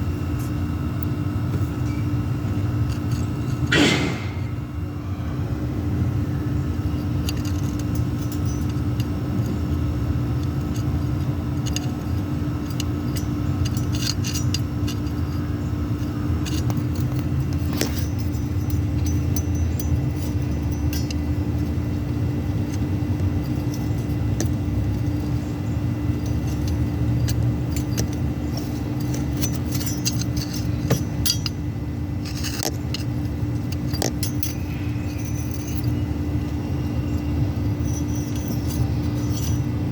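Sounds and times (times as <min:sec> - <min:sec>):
diesel engine idling: 0:00.0 - 0:13.8
sharp ticks and clinks: 0:06.8 - 0:39.9.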